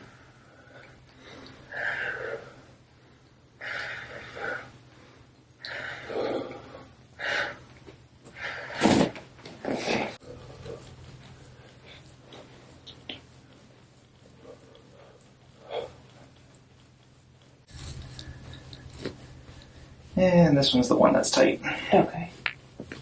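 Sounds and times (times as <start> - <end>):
person breathing heavily: 0.0 - 9.0.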